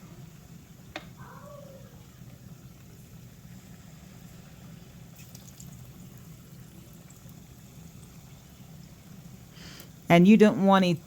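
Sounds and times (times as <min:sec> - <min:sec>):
frying oil sizzling: 0:00.0 - 0:11.0.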